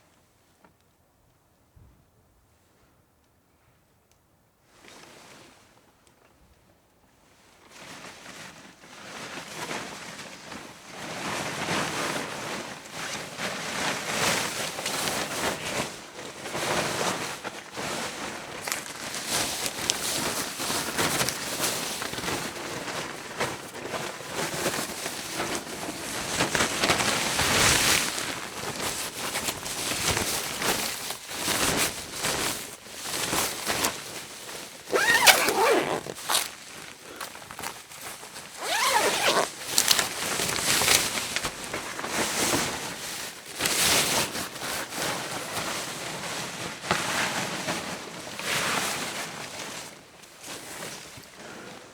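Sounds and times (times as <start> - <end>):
protective suit fabric rustling: 25.5 - 42.2
fabric rasp: 34.9 - 36.4, 38.6 - 39.6.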